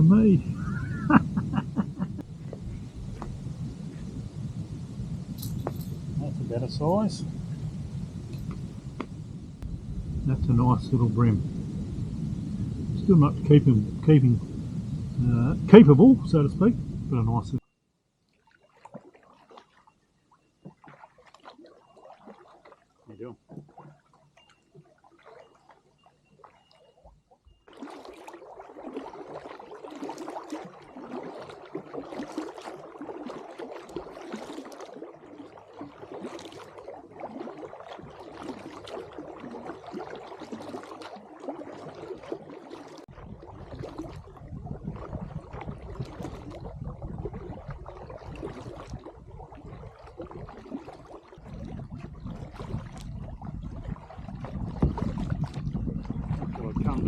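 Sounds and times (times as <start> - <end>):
wind rumble on microphone: 0.0 - 17.6, 43.1 - 57.0
water splashing around kayak: 0.0 - 57.0.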